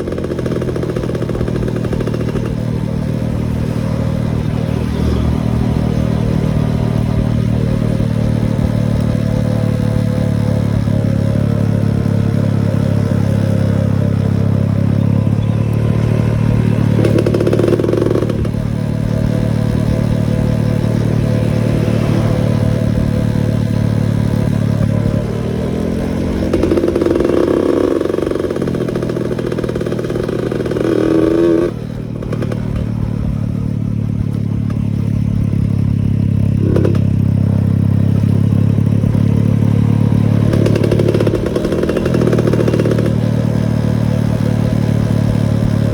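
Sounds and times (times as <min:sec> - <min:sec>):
two-stroke motorcycle engine: 0:00.0 - 0:45.9.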